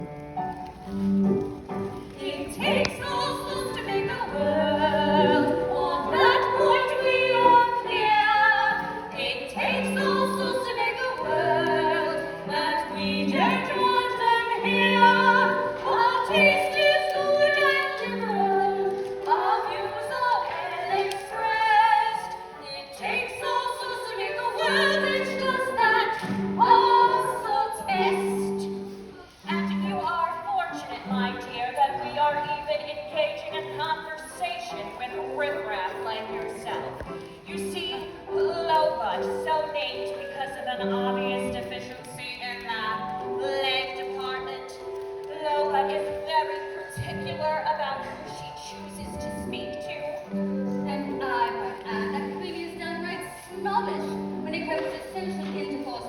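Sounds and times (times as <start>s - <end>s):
instrumental accompaniment: 0.0s - 56.0s
voices singing: 2.2s - 28.6s.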